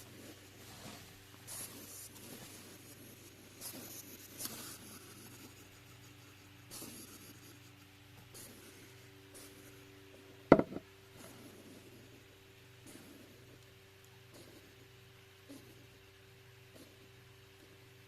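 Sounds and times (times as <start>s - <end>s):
sharp thump: 10.5s - 10.8s.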